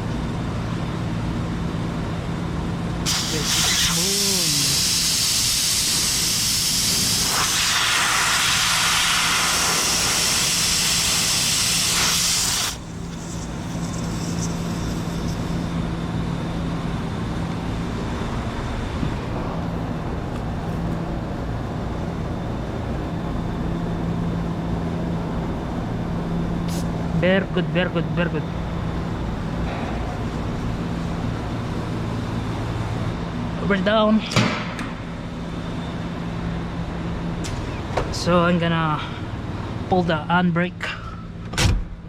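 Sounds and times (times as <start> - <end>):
mechanical hum: 0.0 - 42.0
rushing air hiss: 3.0 - 15.6, 26.7 - 27.0.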